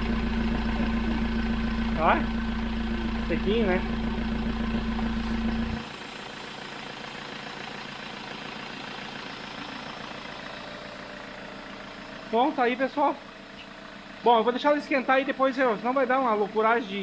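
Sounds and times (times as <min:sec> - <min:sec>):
loud low hum: 0:00.0 - 0:05.9
engine idling: 0:00.0 - 0:17.0.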